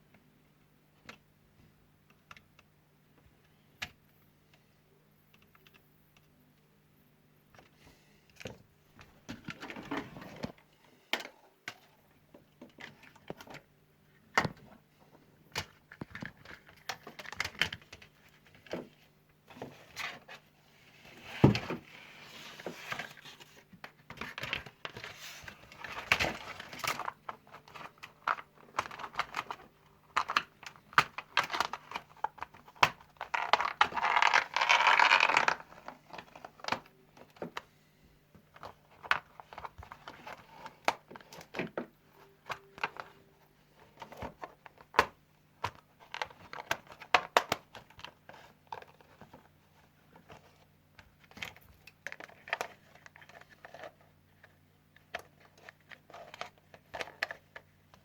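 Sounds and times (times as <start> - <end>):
plastic parts clicking and knocking: 15.5 - 19.0, 25.7 - 37.7, 38.3 - 43.2, 43.9 - 49.5, 50.1 - 58.0.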